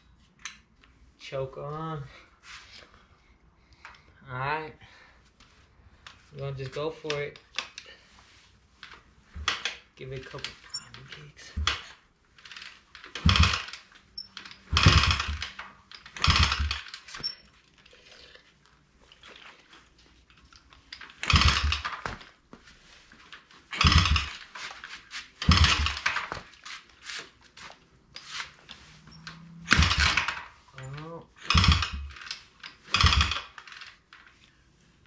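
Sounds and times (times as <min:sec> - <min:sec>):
motorbike engine turning over: 0:12.4 - 0:17.3, 0:21.1 - 0:22.2, 0:23.7 - 0:24.6, 0:25.4 - 0:26.5, 0:29.1 - 0:33.9.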